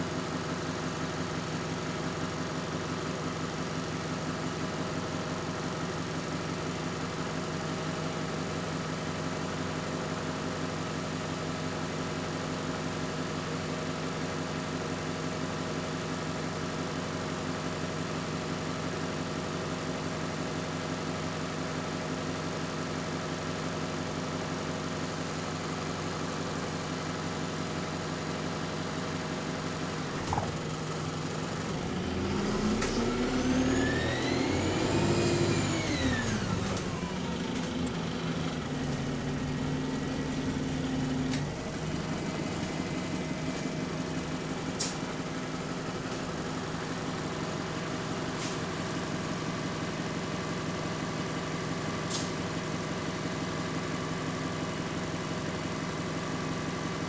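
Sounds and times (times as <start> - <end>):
bus engine idling: 27.9 - 33.3, 34.9 - 55.6
turbo whine: 29.7 - 47.7.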